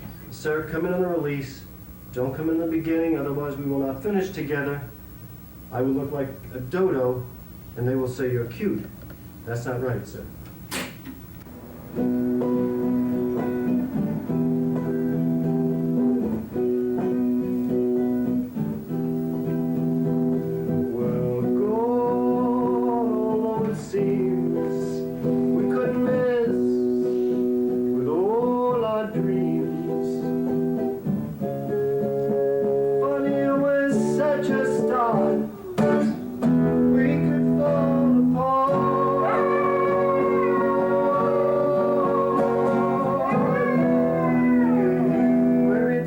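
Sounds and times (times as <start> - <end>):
acoustic guitar strumming chords: 10.7 - 46.0
dog howling: 35.2 - 36.5, 38.7 - 45.9.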